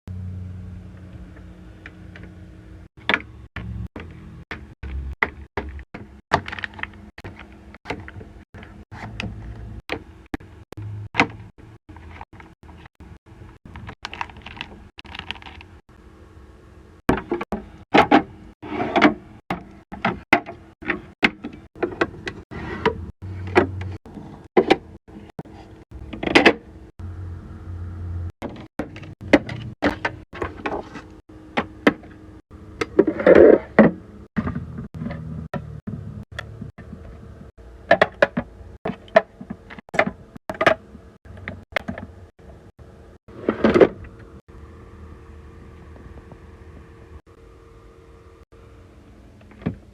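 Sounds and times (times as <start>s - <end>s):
steady hum: 40.9s - 49.9s.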